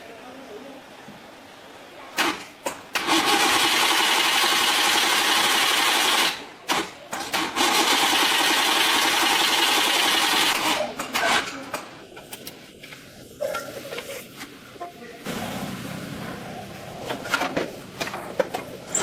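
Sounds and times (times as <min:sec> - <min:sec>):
loud machine noise: 0:03.0 - 0:10.9.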